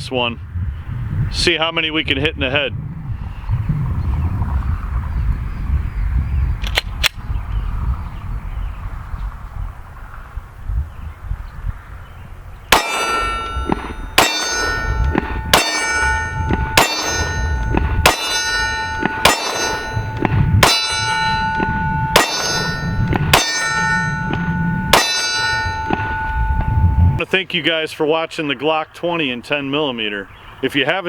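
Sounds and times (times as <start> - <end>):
pistol shots: 12.7 - 26.3
steel target clanging: 12.7 - 27.2.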